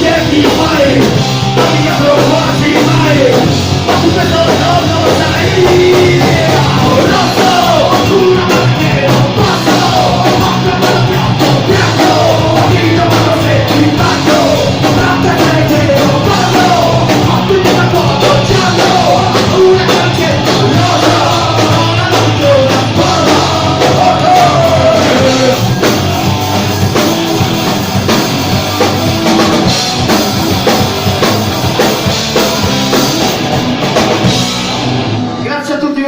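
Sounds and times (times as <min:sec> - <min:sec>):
sung and yelled vocals: 0:00.0 - 0:26.9
distorted electric guitars: 0:00.0 - 0:36.0
drums: 0:00.0 - 0:36.0.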